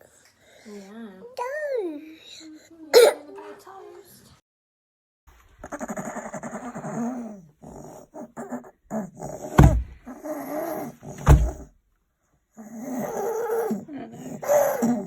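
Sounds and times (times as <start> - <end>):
child barking coughs: 2.9 - 3.3.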